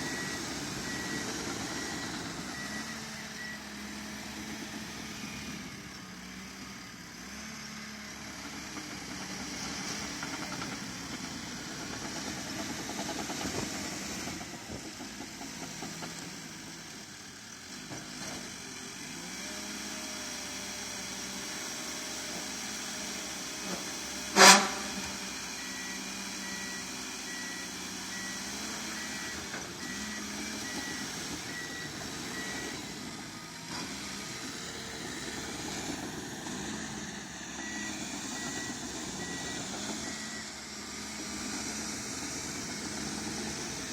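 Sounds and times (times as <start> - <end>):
dozer diesel engine working: 0.0 - 43.9
faint backup alarm beeping: 25.6 - 32.9, 37.0 - 40.7.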